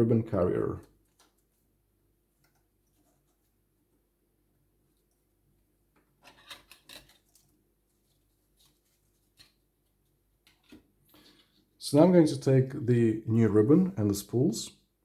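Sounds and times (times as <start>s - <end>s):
faint clicks and rustles: 4.8s - 11.8s.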